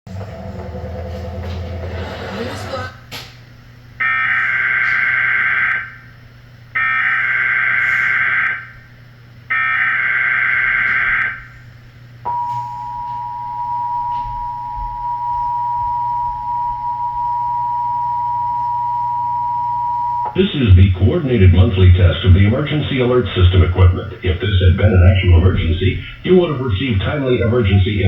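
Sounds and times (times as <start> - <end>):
two-tone attention signal: 12.3 - 20.4, 26.9 - 28.0
warbling digital data tones: 19.2 - 28.0.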